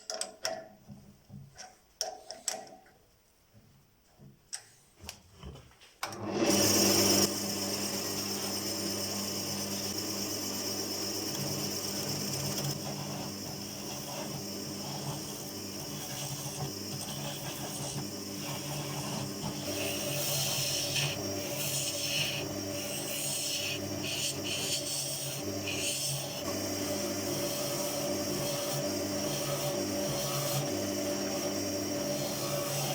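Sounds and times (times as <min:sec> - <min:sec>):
lathe motor humming: 0:06.2 - 0:32.9
hiss of spinning workpiece: 0:12.4 - 0:26.5.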